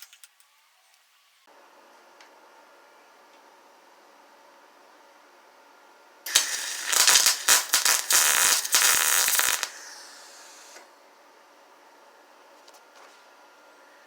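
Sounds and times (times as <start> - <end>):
welding arc crackling: 6.3 - 10.8
faint hiss: 6.3 - 10.9.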